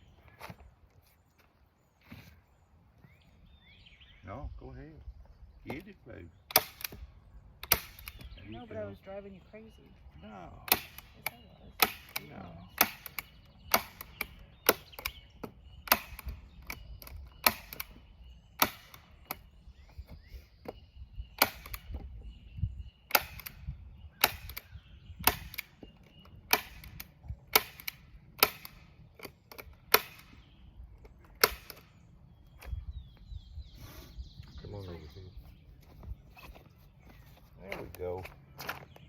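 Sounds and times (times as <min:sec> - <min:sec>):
staple gun firing: 0:06.5 - 0:07.0, 0:10.7 - 0:15.2, 0:23.1 - 0:23.6, 0:24.2 - 0:25.7, 0:26.5 - 0:30.3, 0:31.4 - 0:31.8.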